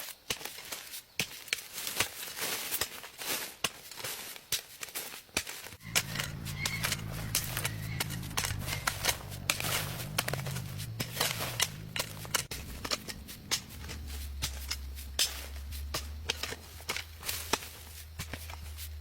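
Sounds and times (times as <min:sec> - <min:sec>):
rustles of handling: 0:00.0 - 0:19.0
low steady hum: 0:05.8 - 0:19.0.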